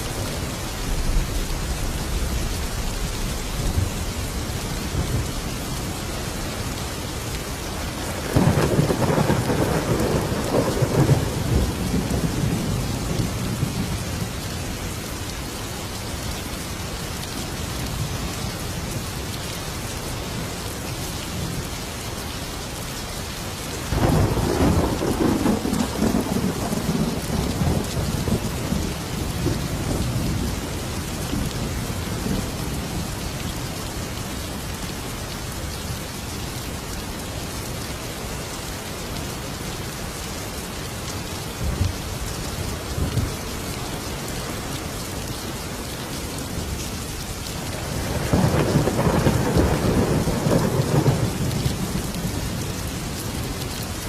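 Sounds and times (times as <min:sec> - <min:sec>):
heavy rain: 0:00.0 - 0:54.0
rolling thunder: 0:08.1 - 0:14.3, 0:23.9 - 0:30.6, 0:47.7 - 0:52.8.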